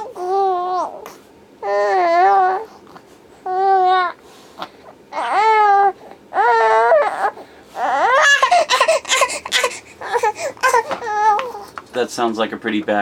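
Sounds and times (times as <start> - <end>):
child crying out: 5.2 - 11.7.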